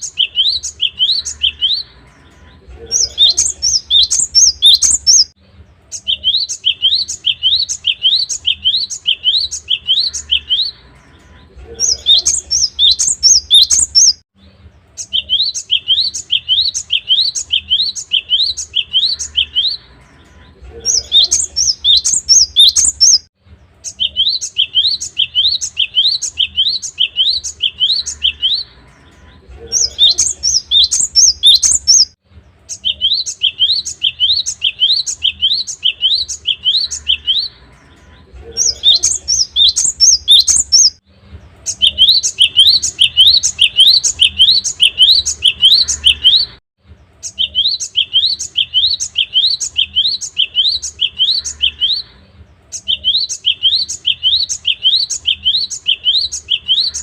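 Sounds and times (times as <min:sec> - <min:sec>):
bird singing high notes: 0:00.0 - 0:05.4, 0:06.0 - 0:14.2, 0:15.0 - 0:41.0, 0:41.7 - 0:46.6.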